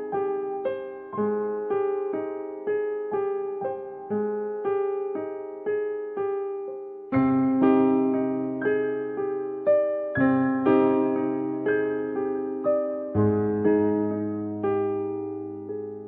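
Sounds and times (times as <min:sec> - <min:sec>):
gentle electric piano: 0:00.0 - 0:16.0
low piano chord: 0:00.0 - 0:16.0.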